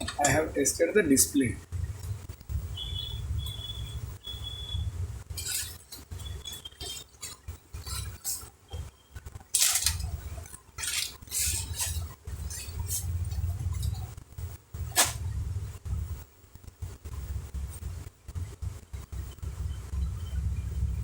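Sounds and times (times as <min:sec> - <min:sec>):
small tools clicking and clinking: 0:05.4 - 0:08.5, 0:09.5 - 0:14.0.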